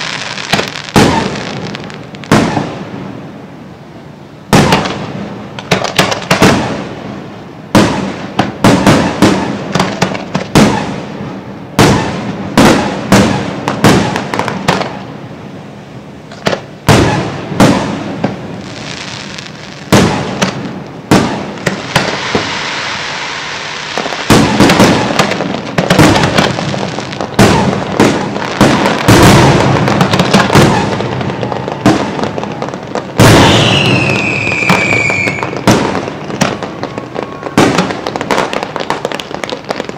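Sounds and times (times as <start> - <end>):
firework falling whistle: 0.0 - 2.8, 21.2 - 25.2, 29.0 - 38.0
fireworks bangs: 0.0 - 3.8, 4.4 - 39.9
fireworks crackling hiss: 0.0 - 39.9.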